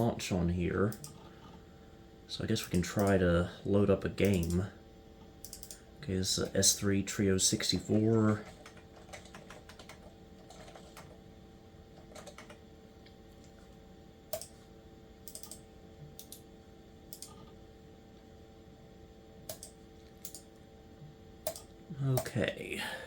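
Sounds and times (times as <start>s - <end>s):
desktop computer hum: 0.0s - 23.0s
keyboard and mouse clicks: 5.4s - 5.8s, 14.3s - 14.6s, 15.2s - 15.6s, 16.2s - 16.4s, 17.1s - 17.5s, 19.5s - 20.5s, 21.4s - 22.3s.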